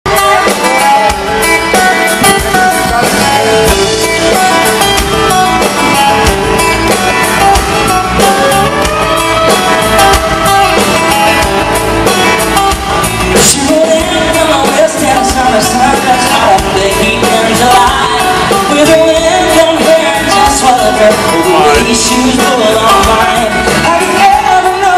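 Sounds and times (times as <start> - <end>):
guitar: 0.0 - 24.9
live band playing: 0.0 - 24.9
steady drum beat: 0.1 - 24.9.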